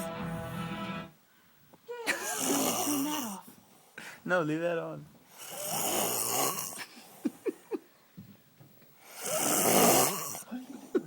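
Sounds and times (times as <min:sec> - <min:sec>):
man snoring: 0:02.3 - 0:03.4, 0:05.3 - 0:06.8, 0:09.0 - 0:10.5.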